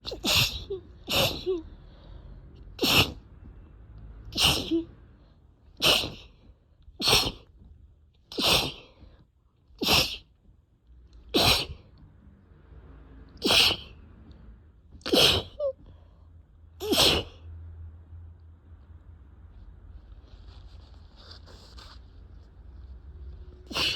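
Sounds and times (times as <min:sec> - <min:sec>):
person sneezing: 0:00.0 - 0:01.6, 0:02.8 - 0:03.2, 0:04.3 - 0:04.9, 0:05.8 - 0:06.4, 0:07.0 - 0:07.5, 0:08.3 - 0:09.0, 0:09.8 - 0:10.3, 0:11.3 - 0:11.8, 0:13.4 - 0:14.0, 0:15.0 - 0:15.8, 0:16.8 - 0:17.4, 0:23.7 - 0:23.9.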